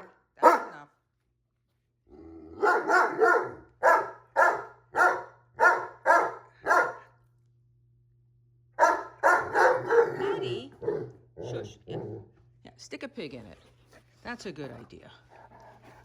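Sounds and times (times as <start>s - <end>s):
puppy barking: 0.0s - 0.8s, 2.6s - 7.1s, 8.8s - 12.2s.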